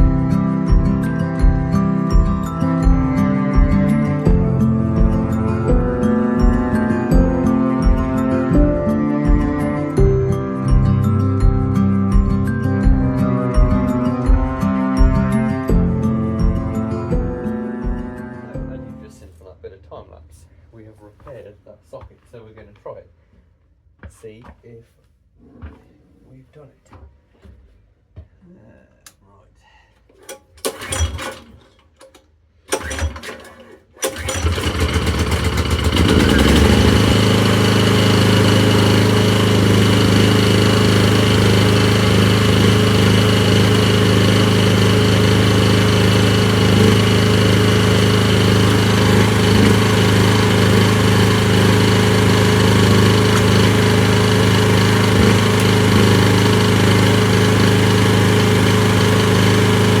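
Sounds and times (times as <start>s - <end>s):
petrol engine running: 0.0s - 18.4s, 30.3s - 31.4s, 32.0s - 60.0s
generator recoil starter pulls: 30.1s - 60.0s.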